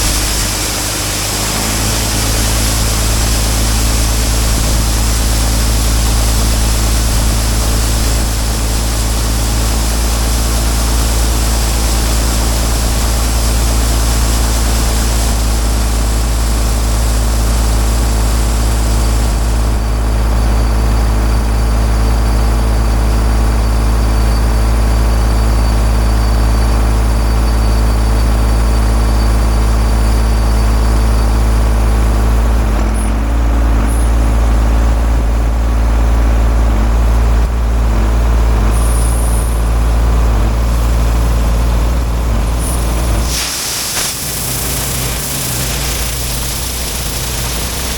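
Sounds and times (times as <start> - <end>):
high hiss: 0.0 - 19.8, 42.6 - 47.9
heavy vehicle engine droning: 0.0 - 47.9.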